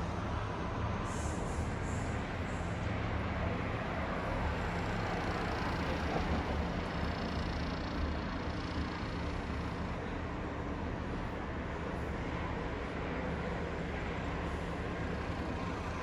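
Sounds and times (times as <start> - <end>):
low rumble of engines: 0.0 - 16.0.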